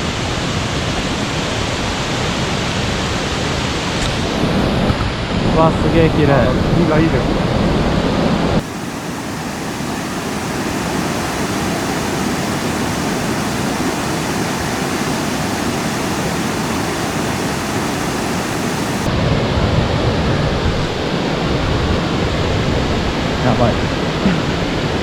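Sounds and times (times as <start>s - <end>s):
waterfall rushing: 8.6s - 19.1s.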